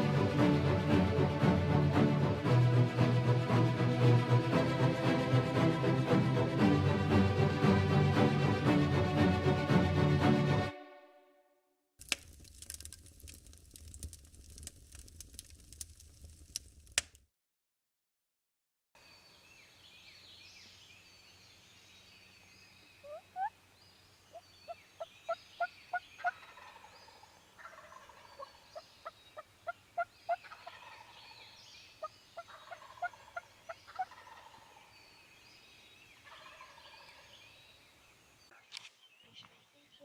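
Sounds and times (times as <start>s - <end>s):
songbirds chirping: 19.0s - 40.0s
turkey calling: 23.0s - 23.5s, 25.3s - 31.2s, 32.0s - 34.9s, 36.2s - 37.3s.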